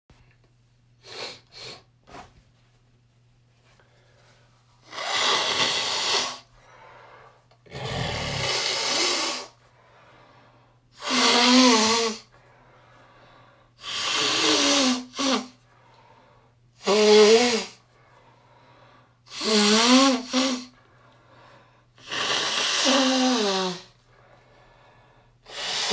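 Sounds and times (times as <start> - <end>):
person blowing nose into tissue: 1.0 - 2.3, 4.8 - 6.5, 7.8 - 9.6, 11.0 - 12.3, 13.8 - 15.6, 16.8 - 17.8, 19.3 - 20.8, 22.0 - 23.9, 25.5 - 25.9.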